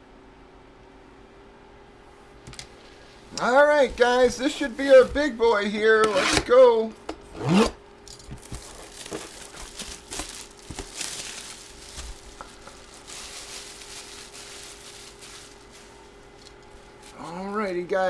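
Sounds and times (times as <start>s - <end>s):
packaging crinkling and rustling: 8.1s - 17.4s.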